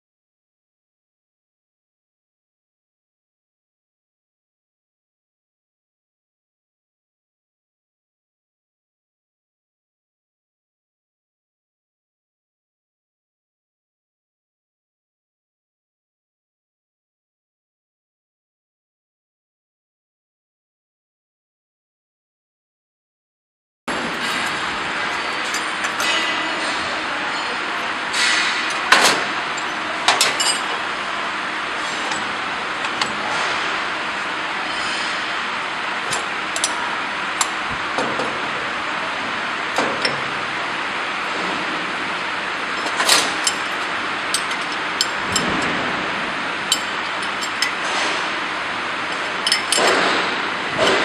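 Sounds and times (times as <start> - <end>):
metallic clinks and knocks: 23.9 - 30.9, 42.8 - 45.8, 46.7 - 48.2, 49.2 - 50.0
test bench running noise: 23.9 - 51.0.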